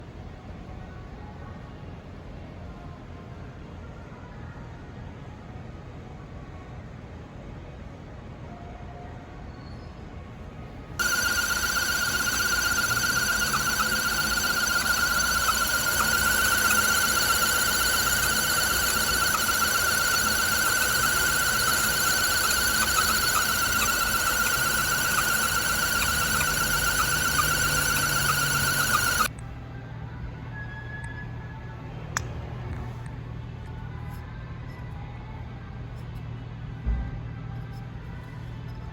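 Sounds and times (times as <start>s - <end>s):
high-pitched engine whine: 11.0s - 29.3s.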